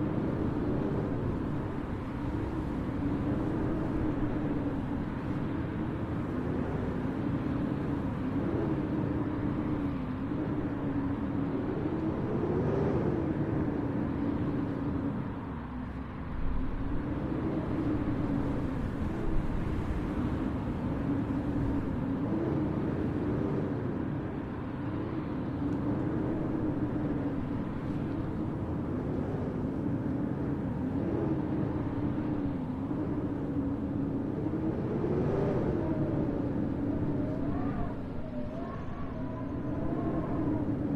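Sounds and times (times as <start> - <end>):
low city rumble: 0.0 - 40.9
wavering hum: 16.6 - 40.9.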